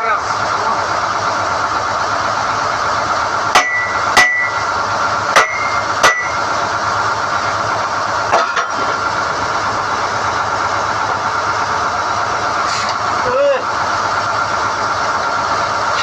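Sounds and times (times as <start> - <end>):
drilling rig engine running: 0.0 - 16.0
steel clanking on steel: 3.5 - 6.7, 8.3 - 9.0.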